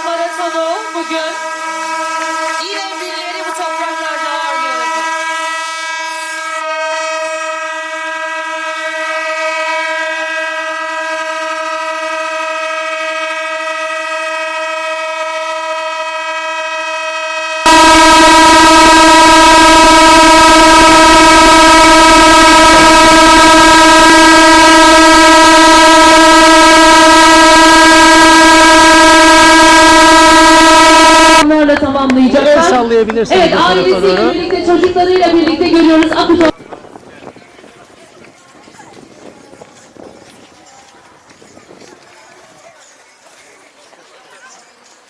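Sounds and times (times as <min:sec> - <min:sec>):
steady horn-like tone: 0:00.8 - 0:31.5.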